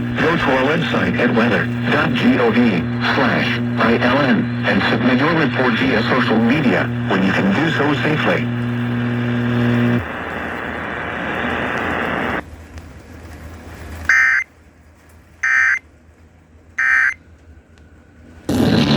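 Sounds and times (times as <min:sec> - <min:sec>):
low hum: 0:00.0 - 0:18.9
warbling digital data tones: 0:14.1 - 0:14.5, 0:15.4 - 0:15.8, 0:16.8 - 0:17.2.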